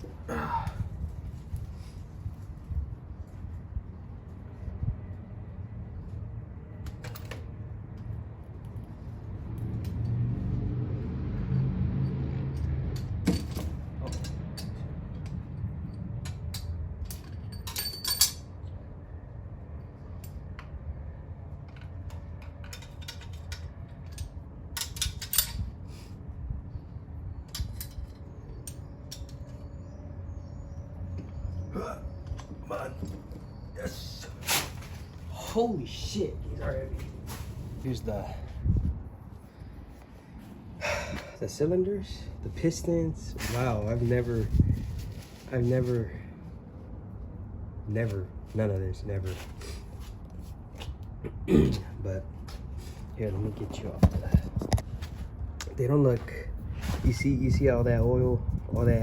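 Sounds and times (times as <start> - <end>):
metal tools clinking: 12.1 - 14.9, 15.9 - 18.7, 21.6 - 25.8, 27.4 - 29.7.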